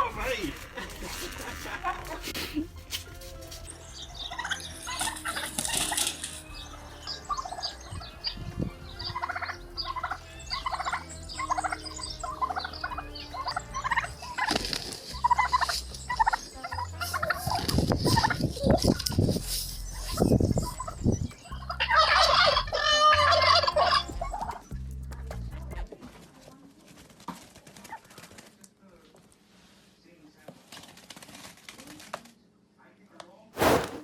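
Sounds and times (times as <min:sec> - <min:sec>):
birds calling: 0:00.0 - 0:24.8.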